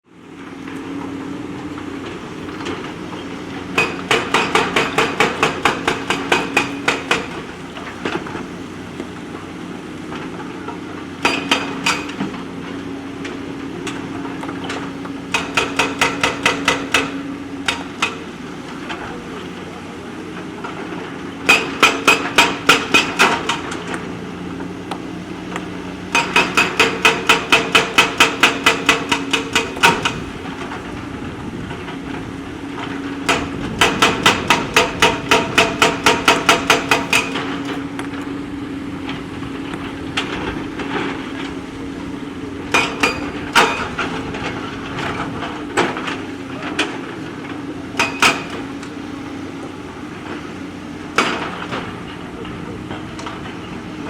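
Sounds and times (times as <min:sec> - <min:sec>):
diesel engine running: 0:00.0 - 0:54.0
hammering blows on stone: 0:03.8 - 0:07.4, 0:11.2 - 0:12.2, 0:15.3 - 0:18.2, 0:21.5 - 0:23.6, 0:26.1 - 0:30.2, 0:33.3 - 0:37.7, 0:42.7 - 0:44.0, 0:48.0 - 0:48.7.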